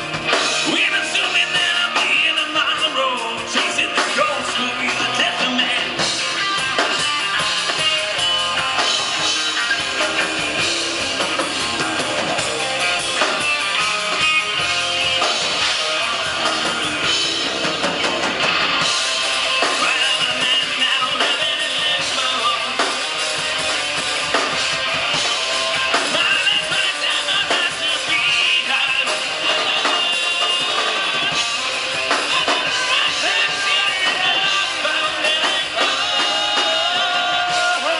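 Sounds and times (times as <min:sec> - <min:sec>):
drum kit: 0:00.0 - 0:37.9
electric guitars: 0:00.0 - 0:37.9
person singing: 0:00.6 - 0:08.4, 0:19.4 - 0:23.2, 0:25.1 - 0:37.9.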